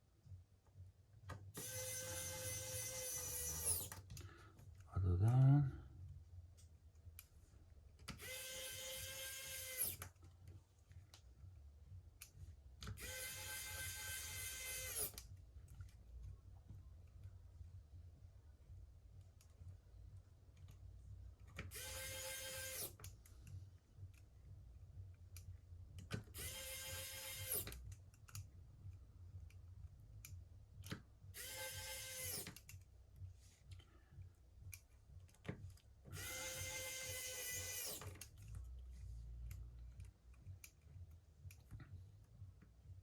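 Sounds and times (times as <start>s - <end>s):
electric screwdriver whine: 1.6s - 4.0s, 8.1s - 10.0s, 13.0s - 15.2s, 21.6s - 23.0s, 26.4s - 27.8s, 31.4s - 32.6s, 36.1s - 38.2s.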